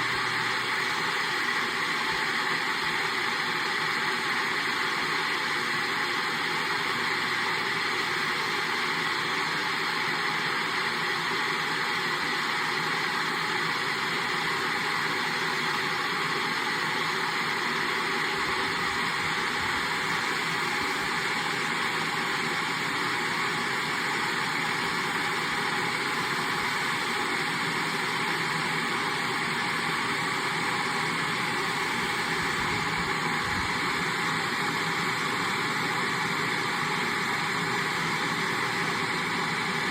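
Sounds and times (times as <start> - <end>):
kettle boiling: 0.0 - 39.9.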